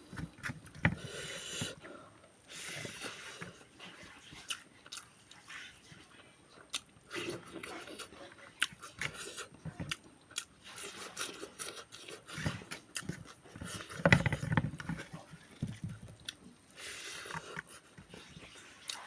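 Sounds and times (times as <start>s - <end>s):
person chewing and biting food: 6.7s - 19.0s.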